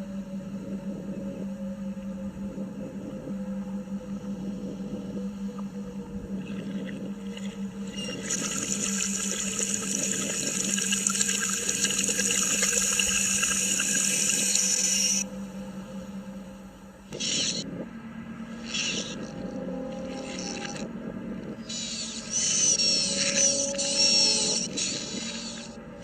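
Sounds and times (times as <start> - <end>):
steady low hum: 0.0 - 26.0
reversed tap water hiss: 8.0 - 15.2.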